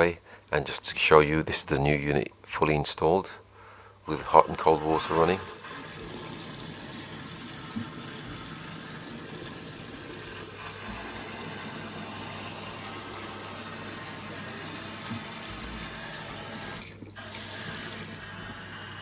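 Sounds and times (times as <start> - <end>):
tap water running into sink: 4.1 - 19.0.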